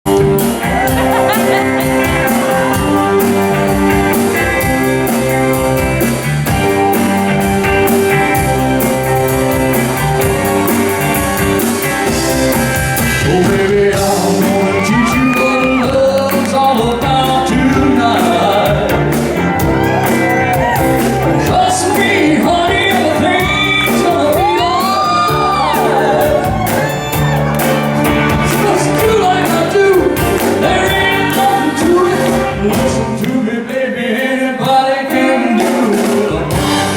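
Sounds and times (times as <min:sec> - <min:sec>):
live band playing: 0:00.0 - 0:33.4, 0:34.6 - 0:36.9
person singing and shouting: 0:13.2 - 0:27.4, 0:28.4 - 0:33.2.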